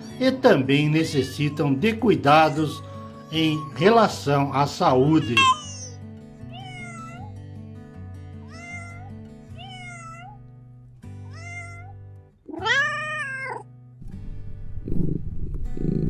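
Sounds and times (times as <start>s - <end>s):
background music with low notes: 0.0s - 12.8s
kitten meowing: 1.1s - 4.0s, 5.0s - 7.3s, 8.4s - 10.4s, 11.3s - 13.6s.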